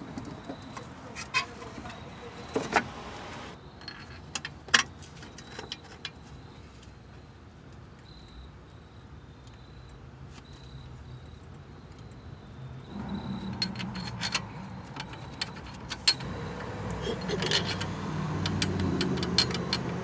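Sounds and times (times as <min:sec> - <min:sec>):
metal tools clinking: 0:12.9 - 0:16.3, 0:17.0 - 0:20.0.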